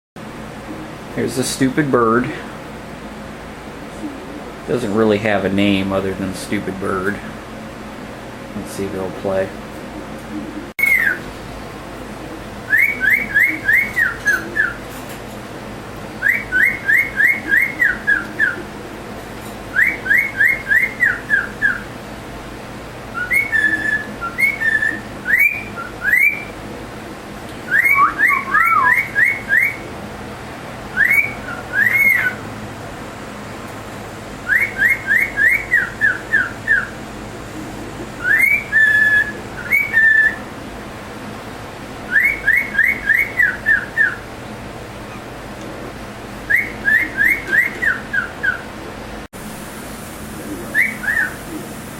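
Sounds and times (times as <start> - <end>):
cockatiel whistling a tune: 10.8 - 11.3, 12.7 - 14.8, 16.2 - 18.6, 19.7 - 21.9, 23.1 - 26.6, 27.6 - 29.9, 30.9 - 32.4, 34.4 - 36.9, 37.5 - 40.4, 42.1 - 44.2, 46.4 - 48.7, 50.7 - 51.4.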